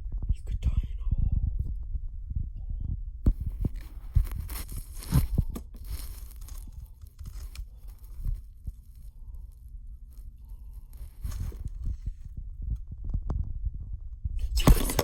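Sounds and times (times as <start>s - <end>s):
rustling: 3.3s - 12.4s, 14.6s - 15.0s.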